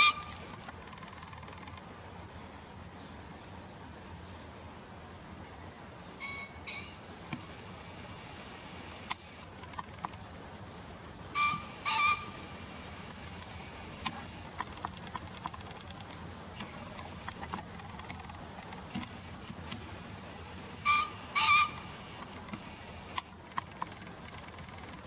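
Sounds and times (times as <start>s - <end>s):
pheasant crowing: 0.0s - 1.8s, 11.3s - 14.5s, 19.9s - 25.0s
sharp ticks: 0.2s - 1.9s, 7.4s - 10.2s, 11.4s - 25.0s.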